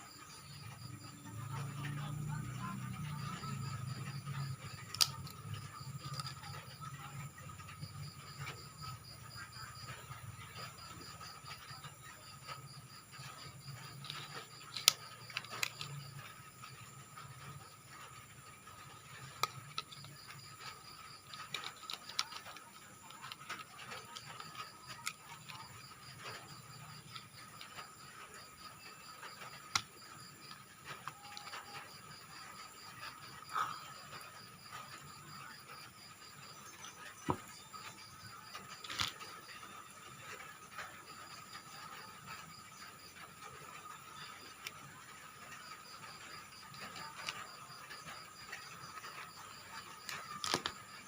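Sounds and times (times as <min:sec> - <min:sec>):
plastic toy parts clicking: 0:01.6 - 0:07.6, 0:12.4 - 0:34.4, 0:37.2 - 0:40.9, 0:43.1 - 0:51.0.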